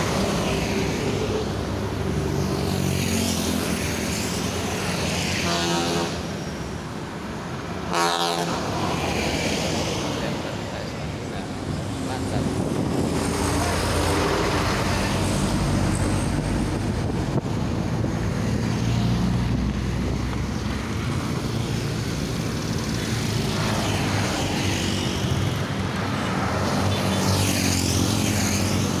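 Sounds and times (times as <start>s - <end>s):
road traffic: 0.0s - 29.0s
vehicle passing: 8.5s - 29.0s.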